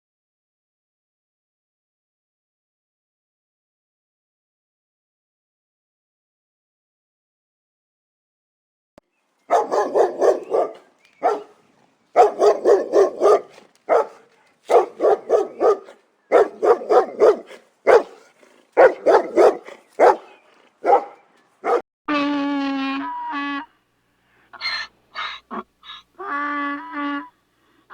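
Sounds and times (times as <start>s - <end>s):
dog barking: 9.5s - 21.8s.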